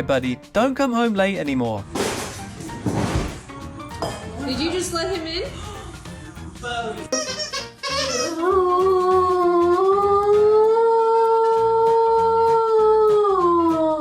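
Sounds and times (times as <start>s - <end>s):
background music with beat: 1.2s - 14.0s.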